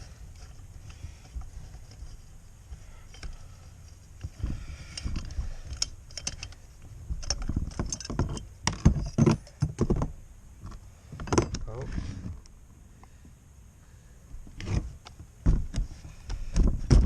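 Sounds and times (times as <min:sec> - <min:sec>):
metallic clicks and clinks: 0:04.9 - 0:06.6, 0:07.2 - 0:09.6.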